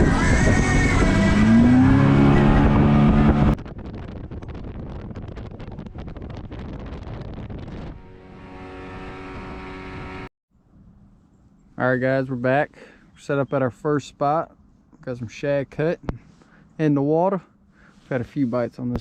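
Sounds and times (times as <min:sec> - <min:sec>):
wind buffeting microphone: 0:00.0 - 0:10.3
motorboat engine: 0:05.4 - 0:10.3.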